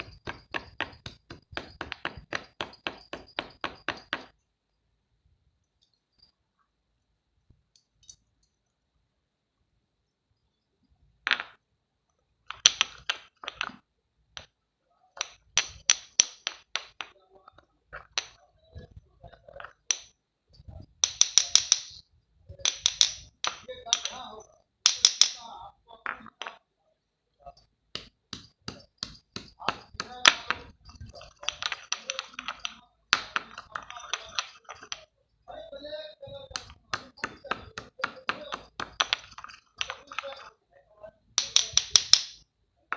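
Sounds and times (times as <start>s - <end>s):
small hard objects clinking: 0.0s - 4.4s, 19.3s - 25.5s, 27.5s - 40.5s, 41.4s - 42.4s.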